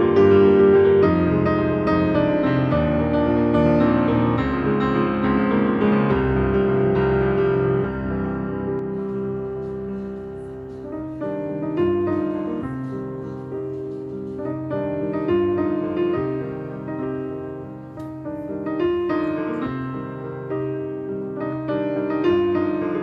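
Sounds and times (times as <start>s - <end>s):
slow piano melody: 0.0s - 23.0s.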